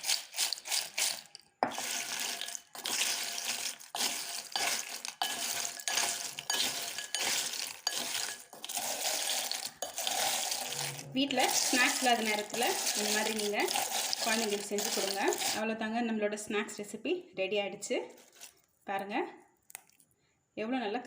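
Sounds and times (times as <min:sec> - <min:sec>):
chips rattling tossed in bowl: 0:00.0 - 0:15.6.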